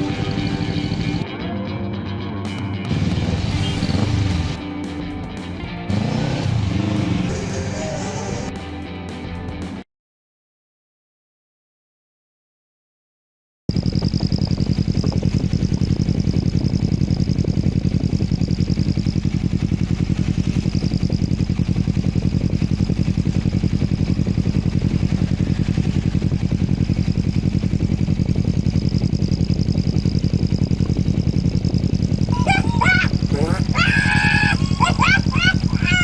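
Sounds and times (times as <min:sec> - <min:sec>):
motorcycle engine idling: 0:00.0 - 0:01.2, 0:02.8 - 0:04.6, 0:13.7 - 0:36.0.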